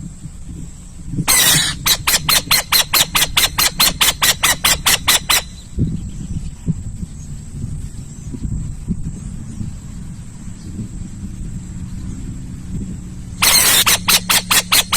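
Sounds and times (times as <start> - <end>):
owl harsh calls: 1.3 - 5.7, 13.4 - 14.9.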